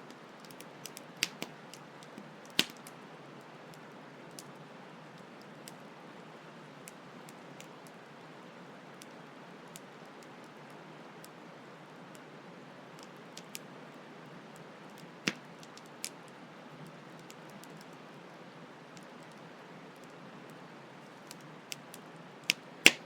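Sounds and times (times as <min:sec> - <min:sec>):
campfire crackling and popping: 0:00.1 - 0:03.0, 0:13.0 - 0:13.7, 0:14.5 - 0:23.0.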